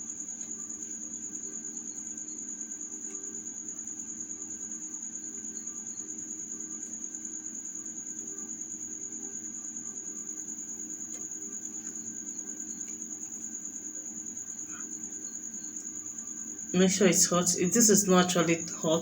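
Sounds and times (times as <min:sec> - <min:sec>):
cricket trilling: 0:00.0 - 0:19.0
low steady hum: 0:11.8 - 0:19.0.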